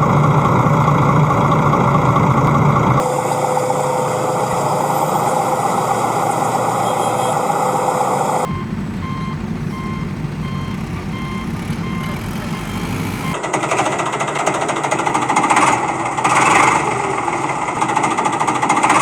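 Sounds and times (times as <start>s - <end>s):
heavy vehicle engine running: 0.0s - 19.0s
reversing alarm beeping: 3.0s - 13.4s.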